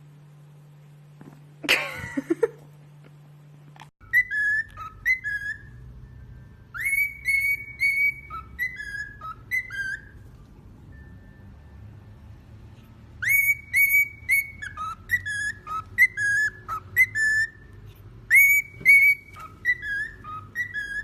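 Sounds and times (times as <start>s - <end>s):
parrot whistling: 4.0s - 11.9s, 13.1s - 21.0s.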